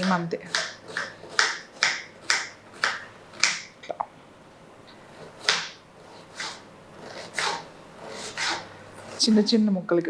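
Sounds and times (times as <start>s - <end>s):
knife chopping onion: 0.0s - 3.8s, 5.1s - 9.3s.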